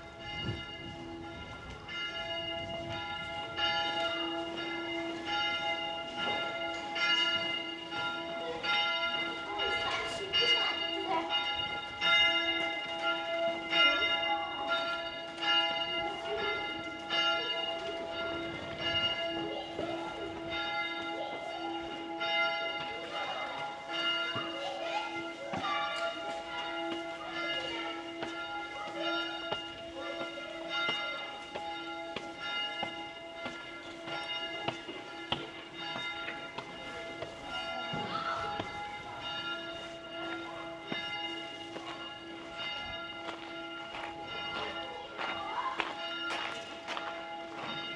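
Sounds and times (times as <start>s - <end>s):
church bells ringing: 0.0s - 47.9s.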